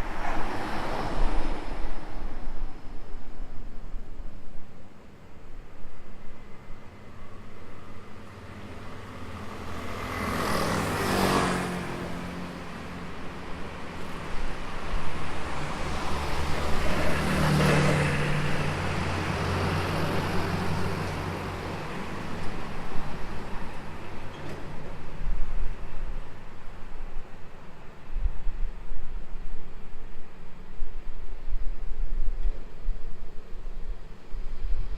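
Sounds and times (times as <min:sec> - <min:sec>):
vehicle passing by: 0:08.4 - 0:12.6, 0:15.2 - 0:22.4
wind buffeting on microphone: 0:24.9 - 0:34.9.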